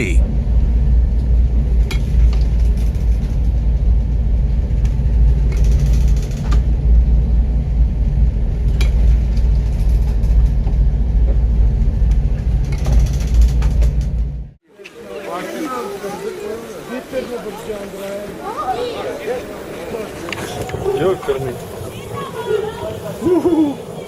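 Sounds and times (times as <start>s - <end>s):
loud low rumble: 0.0s - 14.6s.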